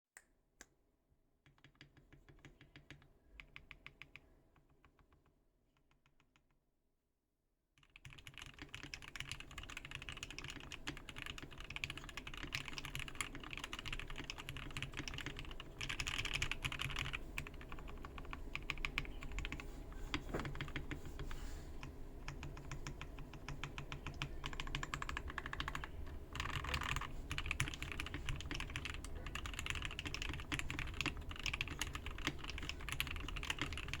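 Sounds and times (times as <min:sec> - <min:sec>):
mechanical keyboard typing: 0:07.9 - 0:34.0.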